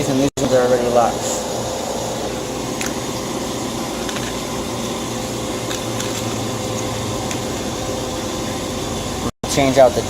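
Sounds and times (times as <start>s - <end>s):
machine humming: 0.0s - 10.0s.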